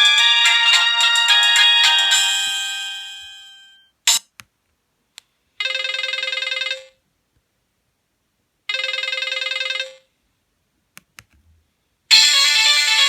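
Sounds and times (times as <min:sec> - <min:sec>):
busy ringtone melody: 0:00.0 - 0:03.8, 0:08.7 - 0:10.0, 0:12.1 - 0:13.0.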